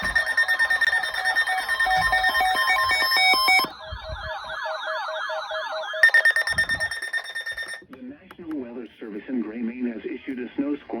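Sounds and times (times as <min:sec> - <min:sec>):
alternating two-pitch beeps: 0:00.0 - 0:07.8
steady high alert tone: 0:00.0 - 0:07.8.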